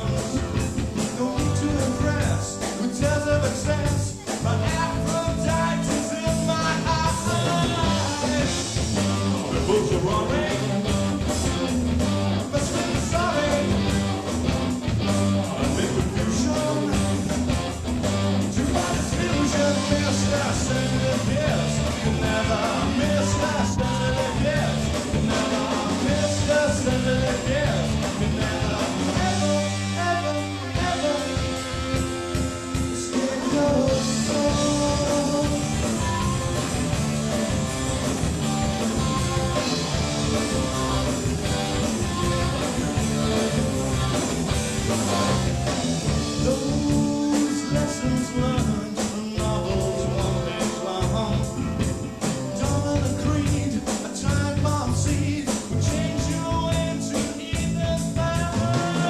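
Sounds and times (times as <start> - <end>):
person singing: 0.0 - 11.1, 12.4 - 14.2, 15.4 - 17.3, 18.5 - 32.2, 32.8 - 36.2, 46.2 - 59.0
rock band playing: 0.0 - 59.0.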